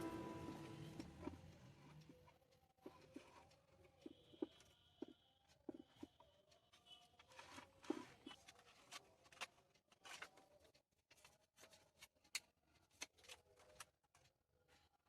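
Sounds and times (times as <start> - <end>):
small clicks and rustles: 5.5 - 15.0.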